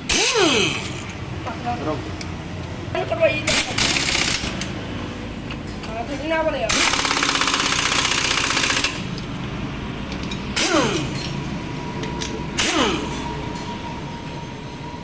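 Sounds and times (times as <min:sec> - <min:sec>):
power tool rattling: 0:00.0 - 0:01.2, 0:03.5 - 0:04.8, 0:06.6 - 0:09.1, 0:10.1 - 0:11.4, 0:12.6 - 0:13.2.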